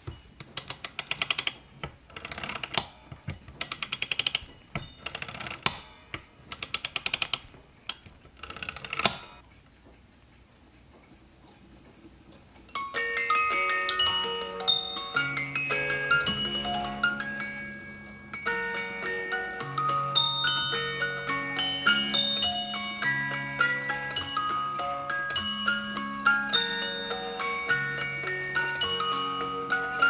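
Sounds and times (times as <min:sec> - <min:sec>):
clock mechanism clicking: 0:00.4 - 0:09.4
clock bell chime ringing: 0:12.8 - 0:30.0.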